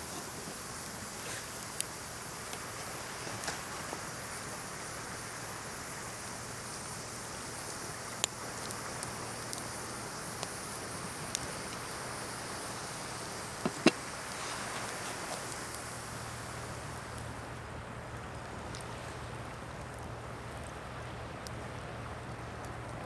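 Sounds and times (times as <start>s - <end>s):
ocean surf hiss: 0.0s - 22.9s
campfire crackling and popping: 0.1s - 4.1s, 8.1s - 16.2s.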